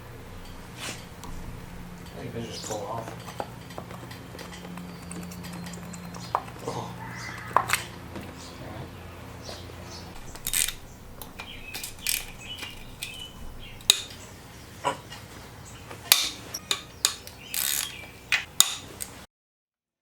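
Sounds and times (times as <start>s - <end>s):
metal parts and tools clanking: 0.3s - 6.8s, 10.2s - 14.3s, 16.0s - 19.2s.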